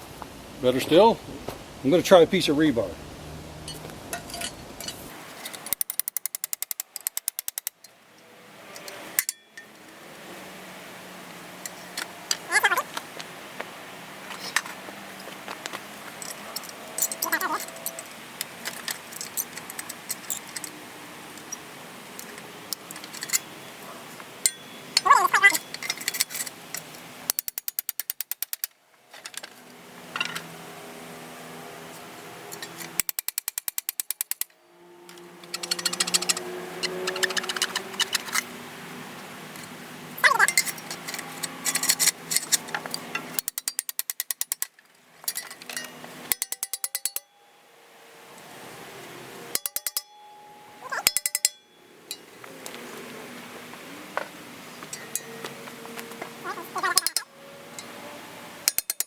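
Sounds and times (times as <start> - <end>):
metal striking metal: 35.1 - 38.5, 45.3 - 47.4, 49.5 - 52.3.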